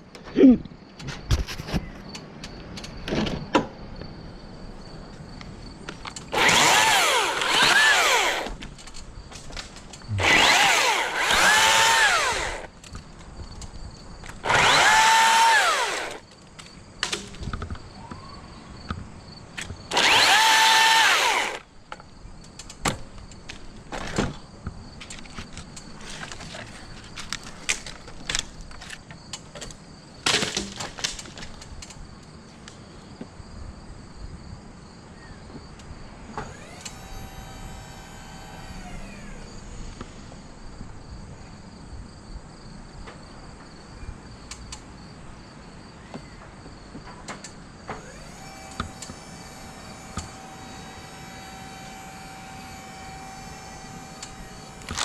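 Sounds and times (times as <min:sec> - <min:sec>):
small electric motor whining: 0:06.3 - 0:08.6, 0:10.0 - 0:12.7, 0:14.4 - 0:16.2, 0:19.9 - 0:21.7, 0:36.3 - 0:40.5, 0:47.9 - 0:55.0.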